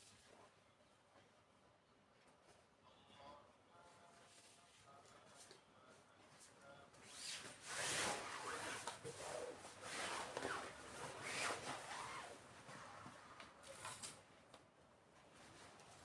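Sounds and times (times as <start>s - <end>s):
curtain rustling and scraping: 7.0s - 14.0s.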